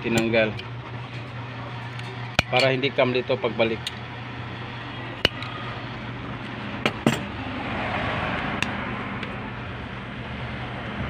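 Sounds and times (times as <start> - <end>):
road traffic: 0.0 - 11.0
steady low hum: 0.0 - 11.0
vehicle passing: 6.1 - 11.0.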